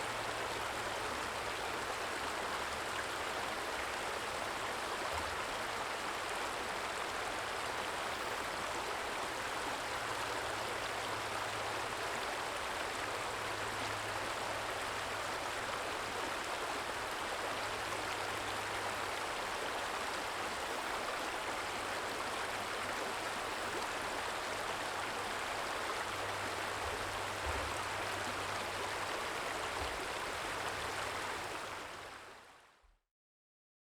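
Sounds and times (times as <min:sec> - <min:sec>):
stream trickling: 0:00.0 - 0:32.5.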